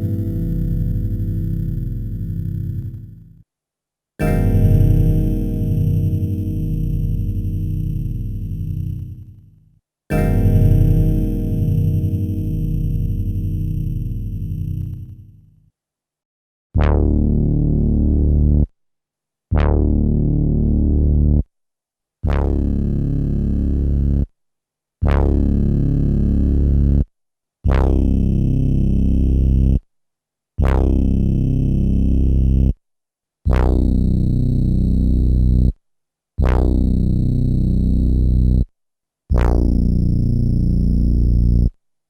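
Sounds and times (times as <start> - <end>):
synthesizer bass note: 0.0 - 3.4, 4.2 - 15.5.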